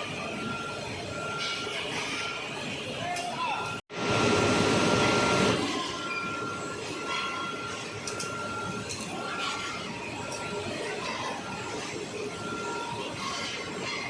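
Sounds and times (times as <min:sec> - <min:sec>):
high machine whine: 0:00.0 - 0:14.0
machinery running: 0:03.9 - 0:14.0.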